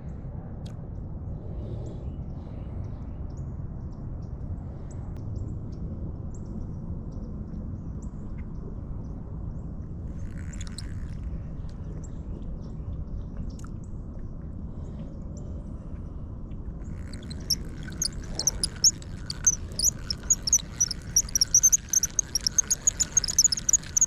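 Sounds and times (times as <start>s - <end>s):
short bird chirps: 17.0s - 24.0s.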